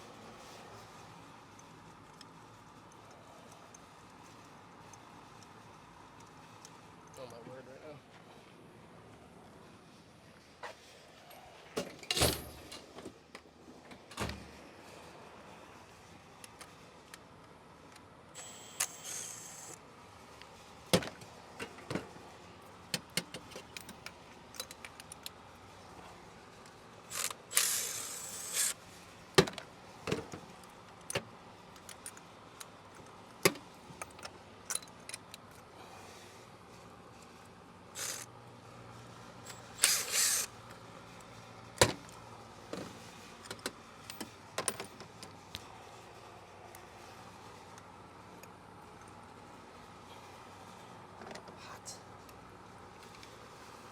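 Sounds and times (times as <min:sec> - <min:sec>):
hissing rasping bursts: 0:27.1 - 0:28.8.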